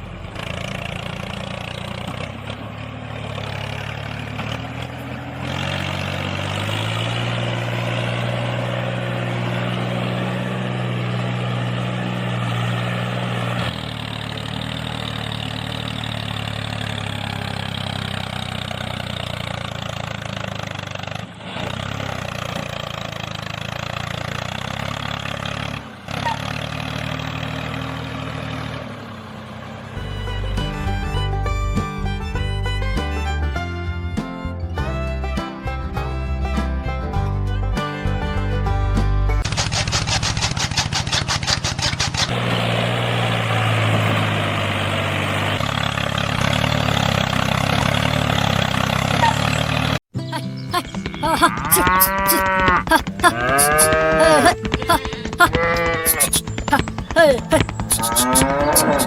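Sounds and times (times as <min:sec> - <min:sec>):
engine idling: 0:00.0 - 0:28.0, 0:38.6 - 0:51.7.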